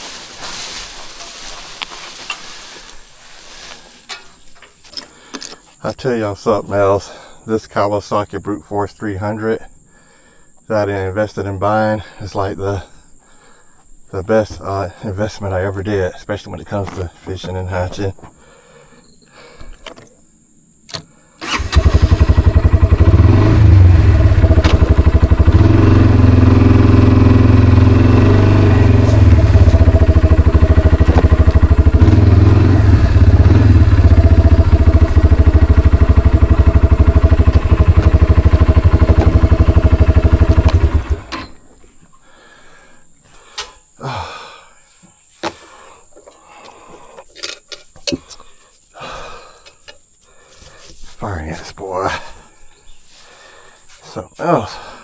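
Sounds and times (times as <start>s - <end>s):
atv engine revving: 21.4s - 41.6s.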